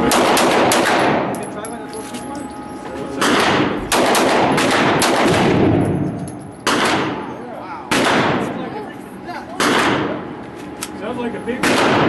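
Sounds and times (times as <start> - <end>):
gunshots echoing: 0.0 - 1.3, 3.2 - 8.6, 9.6 - 10.2, 11.6 - 12.0.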